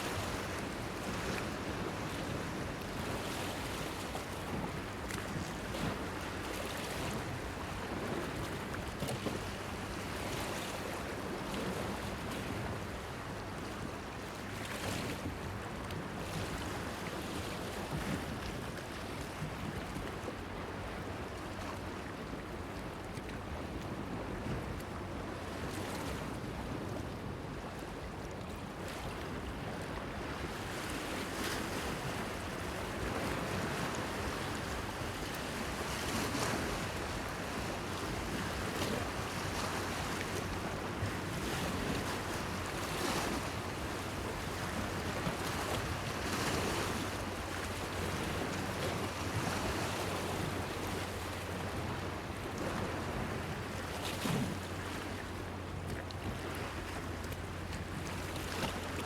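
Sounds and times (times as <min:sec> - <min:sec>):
waves splashing against a pier: 0:28.8 - 0:59.0.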